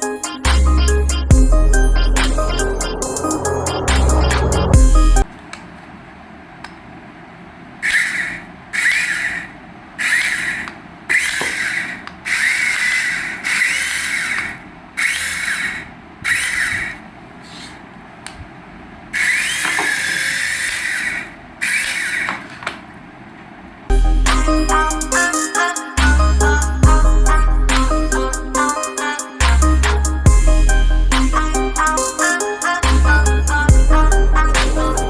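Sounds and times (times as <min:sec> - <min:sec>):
small electric toy motor whirring: 0:07.8 - 0:17.0, 0:19.1 - 0:22.4.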